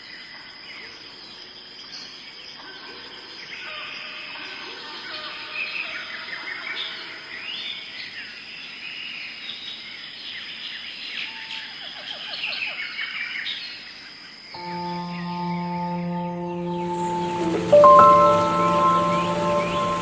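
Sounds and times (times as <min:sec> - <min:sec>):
run of lower notes: 0:14.6 - 0:20.0.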